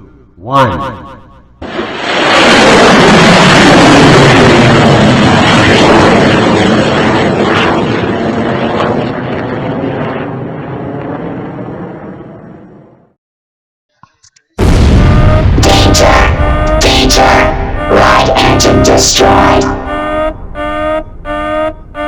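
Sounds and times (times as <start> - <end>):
rocket engine rushing noise: 1.6 - 9.2.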